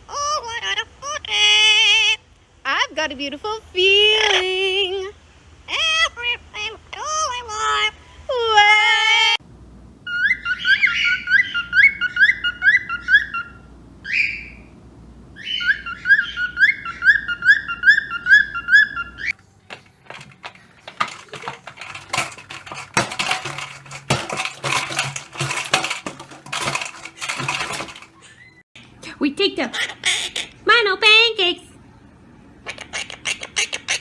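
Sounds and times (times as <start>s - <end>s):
clicks knocks and scraping: 19.7s - 28.3s.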